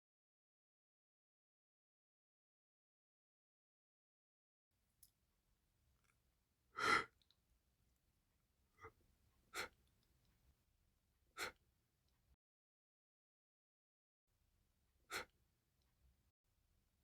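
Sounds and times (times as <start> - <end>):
breathy bursts from nose and mouth: 6.8 - 7.1.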